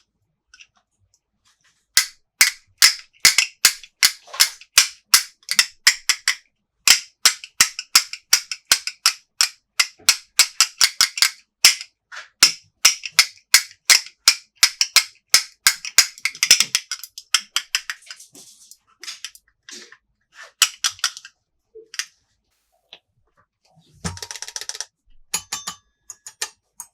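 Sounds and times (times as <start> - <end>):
clicks of plastic toy pieces: 2.0 - 18.2, 19.0 - 19.9, 20.5 - 21.3, 24.1 - 24.9.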